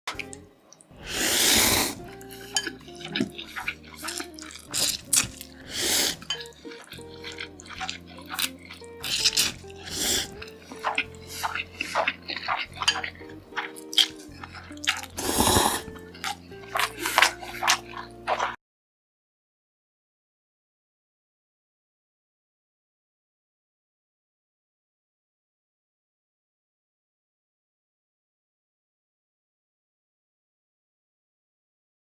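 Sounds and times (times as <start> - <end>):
background music: 0.1 - 18.6
person chewing noodles: 0.1 - 18.6
slurping noodles: 0.1 - 18.6.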